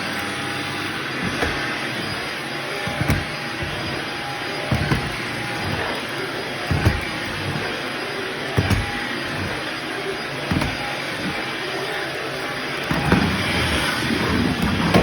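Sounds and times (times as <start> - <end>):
vacuum cleaner running: 0.0 - 15.0
low thuds of vacuum pushed: 1.2 - 7.8, 8.5 - 9.7, 10.4 - 11.5.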